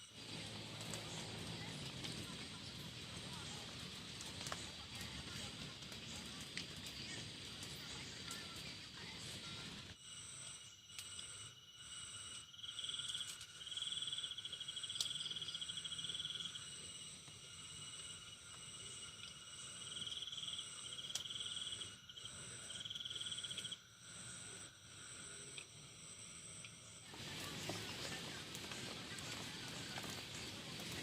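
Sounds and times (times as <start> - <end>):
cricket trills: 0.0 - 31.0
high-pitched insect buzz: 9.9 - 27.9.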